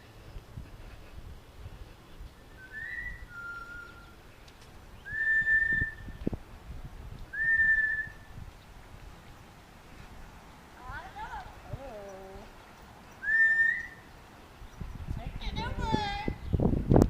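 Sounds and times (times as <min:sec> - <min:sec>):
parrot whistling: 0:13.2 - 0:14.0.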